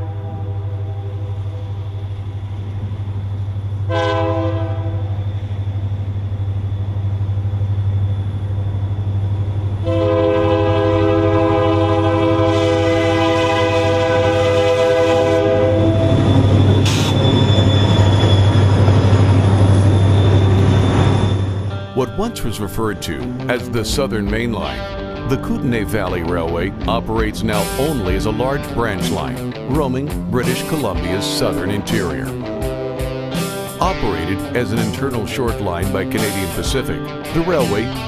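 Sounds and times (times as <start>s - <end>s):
locomotive engine rumble: 0.0s - 38.0s
locomotive air horn: 3.9s - 5.1s, 9.8s - 17.2s.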